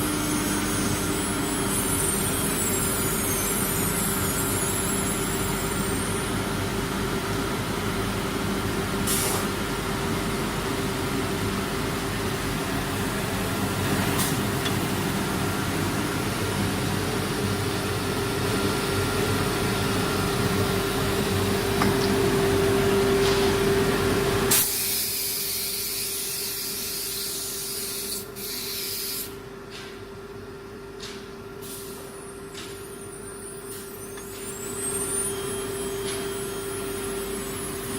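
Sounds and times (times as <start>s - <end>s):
loud hiss: 24.5s - 29.3s.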